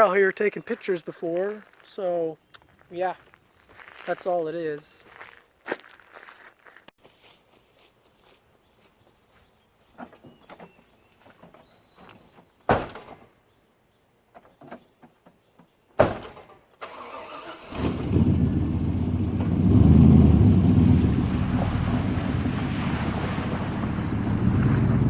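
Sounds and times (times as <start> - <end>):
truck engine starting and revving: 16.8 - 25.0.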